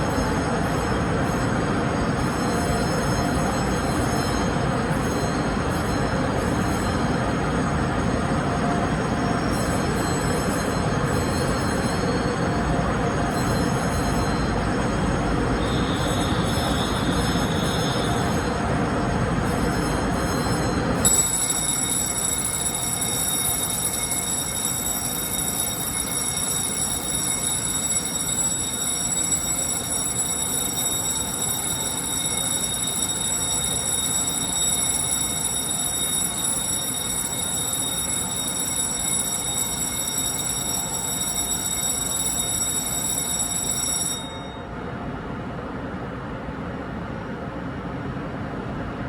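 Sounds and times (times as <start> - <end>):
train low rumble: 0.0 - 30.6
steady high-pitched train tones: 0.0 - 49.0.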